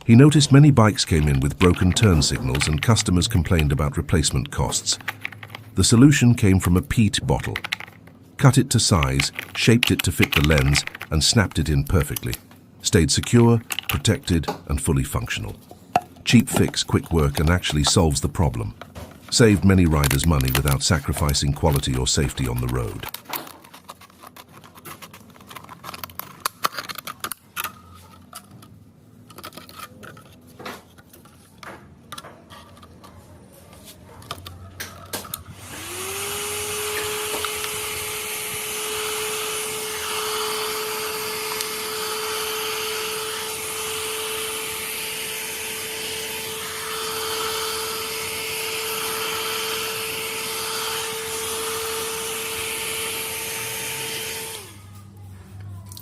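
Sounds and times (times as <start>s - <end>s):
small electric motor tool whirring: 19.2s - 28.6s, 34.3s - 55.0s.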